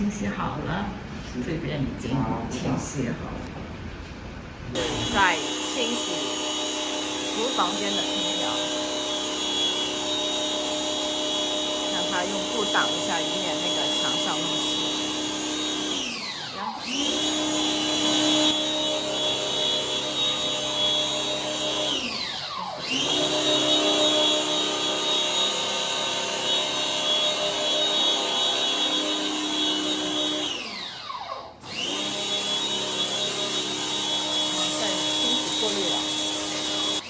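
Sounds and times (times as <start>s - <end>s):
pressure washer pump whining: 4.7s - 37.0s.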